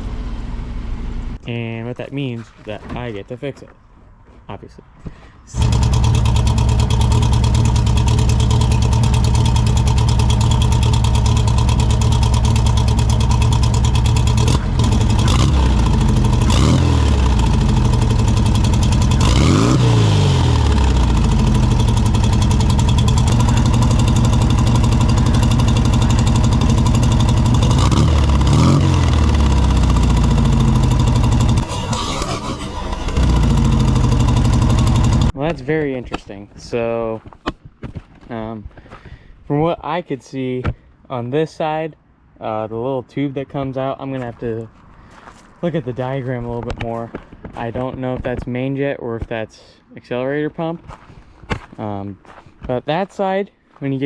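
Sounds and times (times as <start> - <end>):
car engine running and revving: 5.6 - 35.3.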